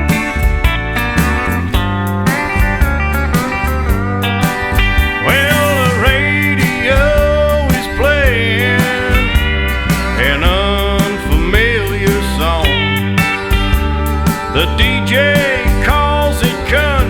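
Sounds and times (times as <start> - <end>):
bass: 0.0 - 17.0
steady drum beat: 0.0 - 17.0
steel guitar gliding lines: 0.0 - 17.0.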